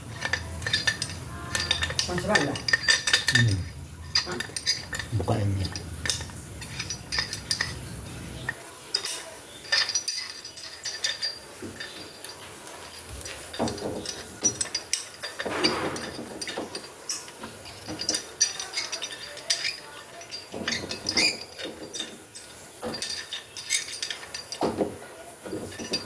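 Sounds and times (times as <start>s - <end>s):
tools and parts clinking: 0.0s - 26.0s
low hum: 2.7s - 8.5s
scraping rustle: 9.8s - 26.0s.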